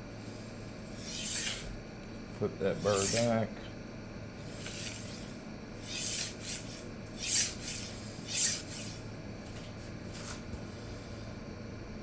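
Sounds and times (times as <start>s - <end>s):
knife scraping on sharpening stone: 0.9s - 1.8s, 2.8s - 3.3s.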